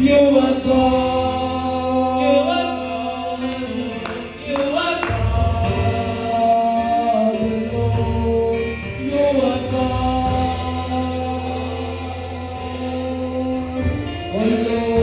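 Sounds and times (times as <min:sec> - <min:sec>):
bass line: 0:00.0 - 0:15.0
person singing: 0:00.0 - 0:15.0
held chords: 0:03.2 - 0:11.3.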